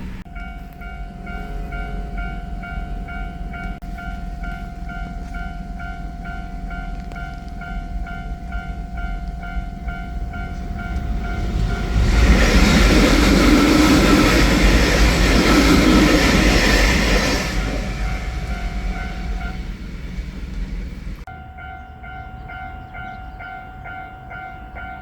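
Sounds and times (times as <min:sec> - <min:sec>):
crossing warning bell ringing: 0:00.0 - 0:25.0
train wheels rushing past: 0:04.4 - 0:21.3.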